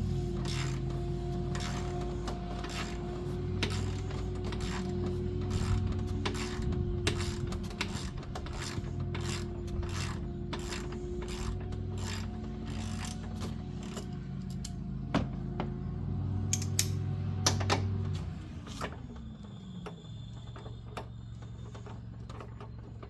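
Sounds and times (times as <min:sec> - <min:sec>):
steady low hum: 0:00.0 - 0:23.0
hand ratchet clicking: 0:03.6 - 0:14.8.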